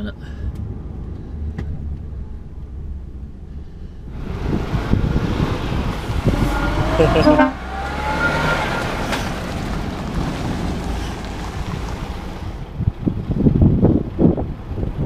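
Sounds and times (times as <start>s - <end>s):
lorry diesel engine driving: 0.0s - 15.0s
road and cab noise: 0.0s - 15.0s
slowly rising tone: 0.7s - 10.0s
brief high tones: 6.3s - 7.8s.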